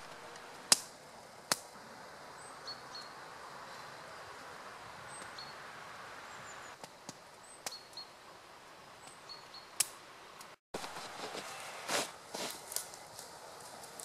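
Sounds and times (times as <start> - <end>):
sharp snaps: 0.2 - 1.7, 9.8 - 10.6
small bird chirping: 2.4 - 4.4, 5.1 - 5.6, 7.4 - 8.2, 9.0 - 9.8
steady hiss: 9.7 - 14.0.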